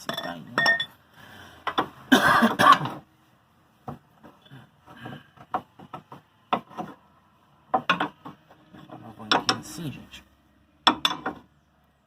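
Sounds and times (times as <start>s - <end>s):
metal tools knocking on suspension: 0.0s - 1.0s, 7.7s - 9.8s, 10.8s - 11.5s.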